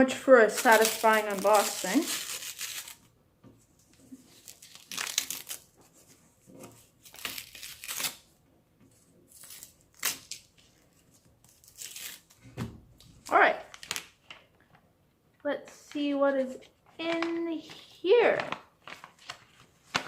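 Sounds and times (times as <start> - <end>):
paper envelope ripping and crinkling: 0.4 - 3.1, 4.0 - 5.8, 6.8 - 8.3, 9.3 - 12.4, 13.2 - 14.3, 16.9 - 20.0.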